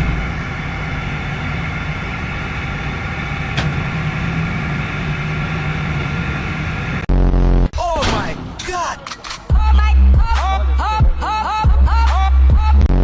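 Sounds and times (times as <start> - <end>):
engine running steadily: 0.0 - 7.7.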